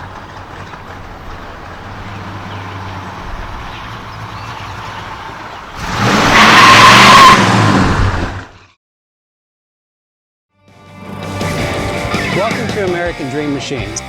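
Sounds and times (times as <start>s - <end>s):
car engine idling: 0.0s - 5.8s
engine revving at full throttle: 1.9s - 8.5s.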